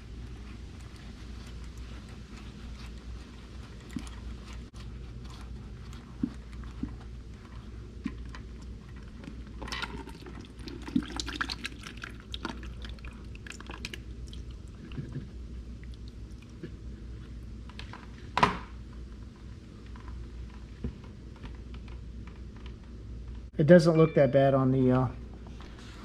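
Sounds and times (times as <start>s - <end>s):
oil trickling from drain: 9.5s - 16.6s.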